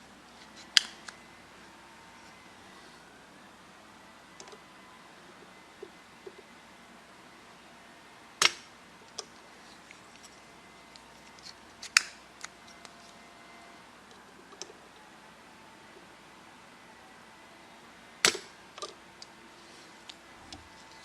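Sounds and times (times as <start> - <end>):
hand tools clicking and snapping: 8.4 - 9.3, 11.3 - 12.8.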